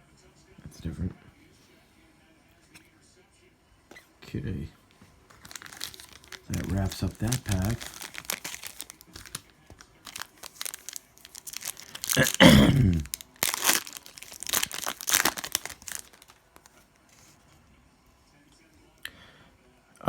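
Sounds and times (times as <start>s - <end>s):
foil wrapper tearing and crinkling: 5.3s - 16.8s.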